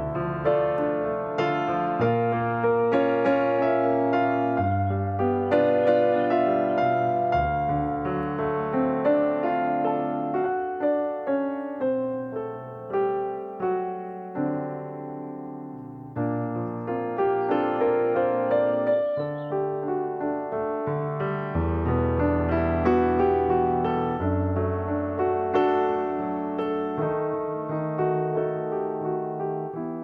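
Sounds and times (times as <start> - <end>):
slow piano-like keyboard music: 0.0 - 30.0.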